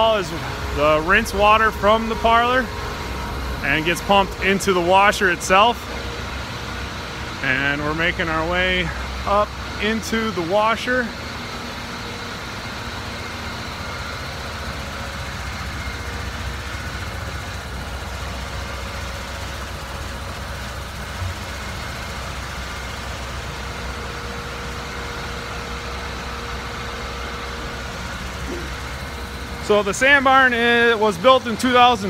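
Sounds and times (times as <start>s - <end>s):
machinery humming: 0.0s - 32.0s.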